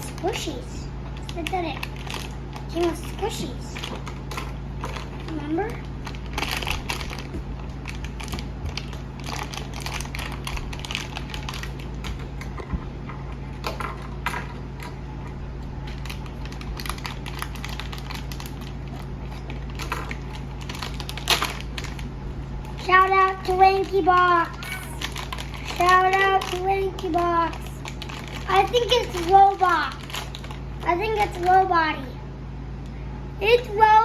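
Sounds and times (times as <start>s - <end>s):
low steady hum: 0.0s - 34.0s
plastic packaging crinkling and tearing: 1.1s - 12.3s, 15.8s - 31.7s.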